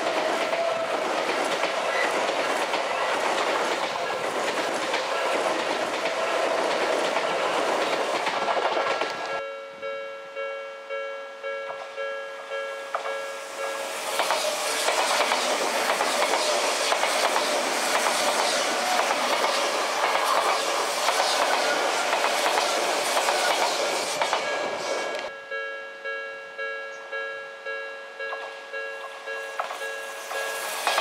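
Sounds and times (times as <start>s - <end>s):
train wheels clattering on rails: 0.0s - 9.4s, 13.8s - 25.3s, 28.3s - 31.0s
level crossing warning bell: 9.2s - 16.3s, 24.5s - 31.0s.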